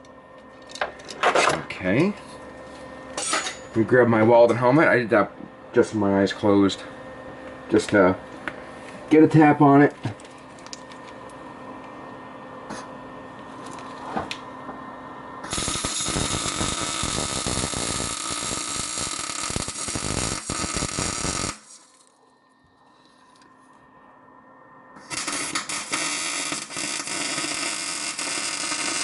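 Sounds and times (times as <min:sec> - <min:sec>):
faint hum: 0:00.0 - 0:29.0
electric arc welding sizzle: 0:15.4 - 0:22.1, 0:25.0 - 0:29.0.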